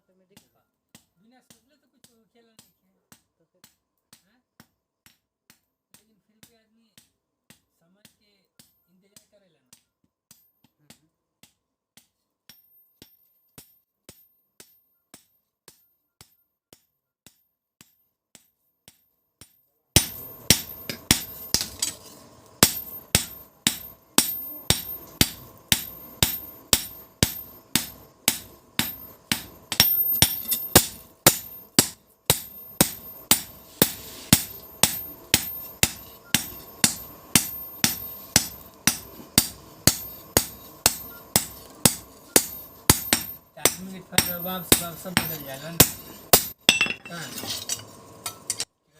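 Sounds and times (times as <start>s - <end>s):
hammer striking steel on anvil: 12.5s - 48.7s.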